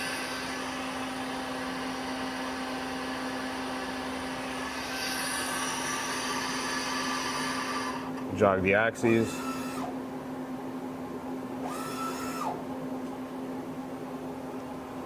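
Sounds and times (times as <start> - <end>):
lathe spindle motor whine: 0.0 - 8.2, 9.0 - 10.0, 11.6 - 12.6.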